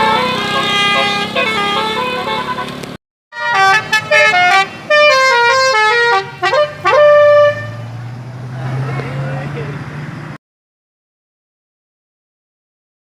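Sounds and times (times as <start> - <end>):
vehicle musical horn playing tune: 0.0 - 7.9.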